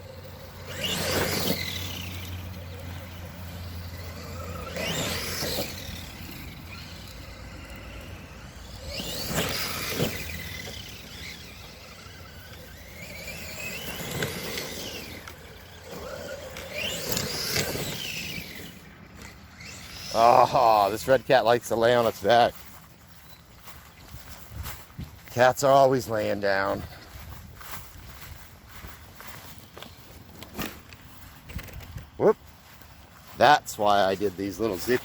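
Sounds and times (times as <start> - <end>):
electric motor whining: 0.0 - 21.3.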